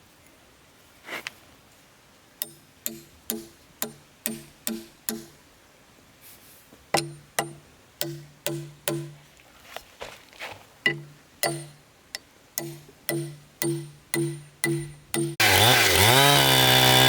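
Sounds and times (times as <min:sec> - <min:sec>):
sharp ringing knocks: 0:02.4 - 0:05.4, 0:07.0 - 0:09.2, 0:10.9 - 0:11.8, 0:12.6 - 0:15.4.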